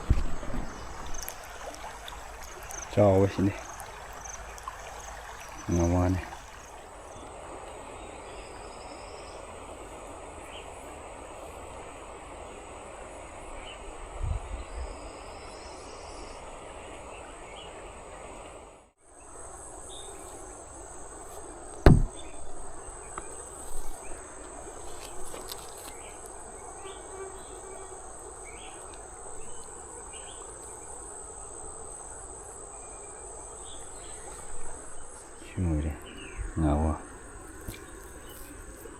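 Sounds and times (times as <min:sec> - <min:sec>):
knocks and thump: 0:00.0 - 0:00.9, 0:21.8 - 0:22.6
river water rushing: 0:00.0 - 0:08.2
insects droning: 0:00.0 - 0:38.9.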